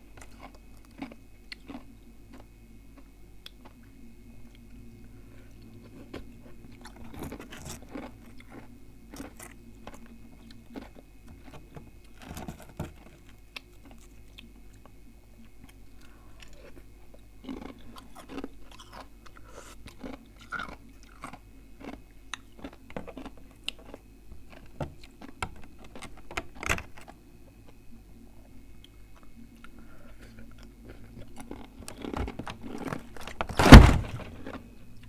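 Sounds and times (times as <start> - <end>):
chewing and crunching ice: 0.1 - 3.9, 5.3 - 27.9, 28.8 - 33.6.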